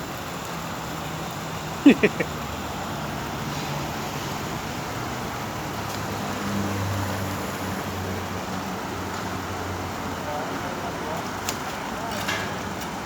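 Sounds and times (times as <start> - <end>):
water splashing down waterfall: 0.0 - 13.0.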